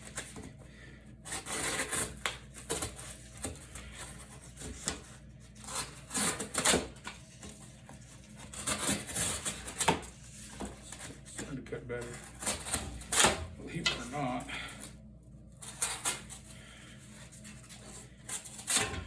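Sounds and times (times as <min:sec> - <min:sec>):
knife slicing cardboard: 0:01.3 - 0:03.6, 0:04.5 - 0:07.0.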